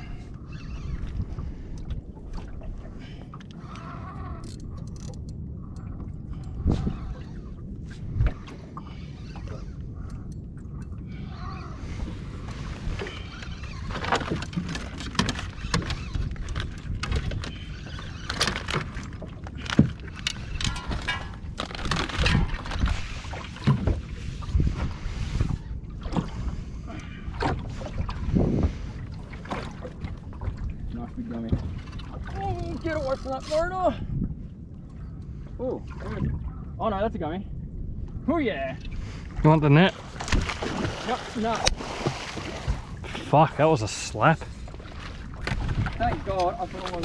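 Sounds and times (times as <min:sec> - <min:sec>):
water splashing: 0:39.5 - 0:47.0.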